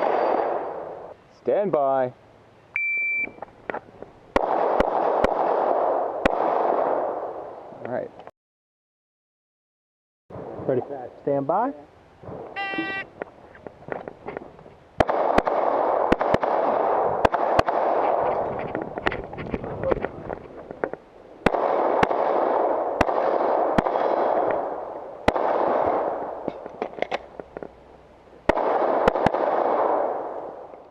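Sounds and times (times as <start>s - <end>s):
rapid pistol fire: 4.3s - 7.4s, 15.0s - 18.3s, 21.4s - 26.4s, 28.5s - 30.5s.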